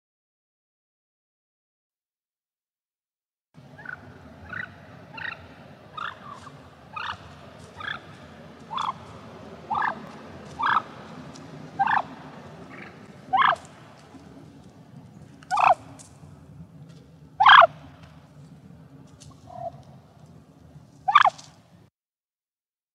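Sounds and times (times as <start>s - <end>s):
steady background hiss: 3.6s - 21.9s
turkey calls: 3.7s - 14.3s, 15.4s - 16.1s, 17.4s - 17.9s, 19.2s - 19.9s, 21.0s - 21.6s.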